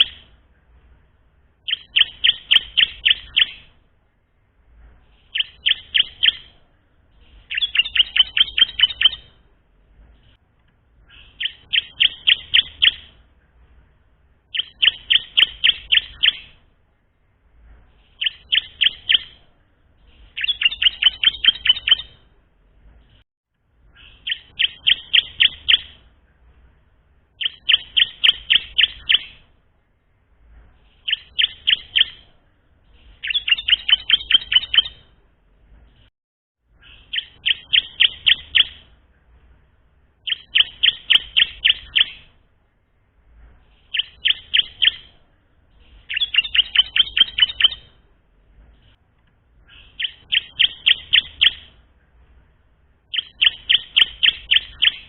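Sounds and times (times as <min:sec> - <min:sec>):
bird singing high chipping notes: 0:01.6 - 0:03.8, 0:05.1 - 0:06.5, 0:07.2 - 0:09.4, 0:11.1 - 0:13.2, 0:14.5 - 0:16.6, 0:18.0 - 0:19.4, 0:20.0 - 0:22.3, 0:23.9 - 0:26.1, 0:27.3 - 0:29.5, 0:30.8 - 0:35.1, 0:36.8 - 0:38.9, 0:40.2 - 0:42.4, 0:43.7 - 0:48.0, 0:49.6 - 0:51.8, 0:53.1 - 0:55.0.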